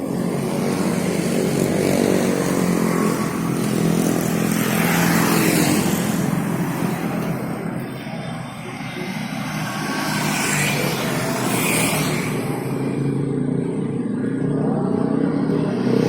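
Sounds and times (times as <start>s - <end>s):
vehicle engine running: 0.0s - 11.4s.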